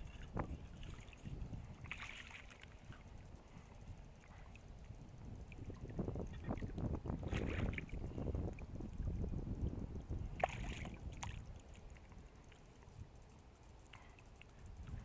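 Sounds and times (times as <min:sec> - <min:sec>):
wind rumbling on microphone: 0:00.0 - 0:15.0
water splashing: 0:00.2 - 0:03.0, 0:05.5 - 0:08.0, 0:10.3 - 0:12.7.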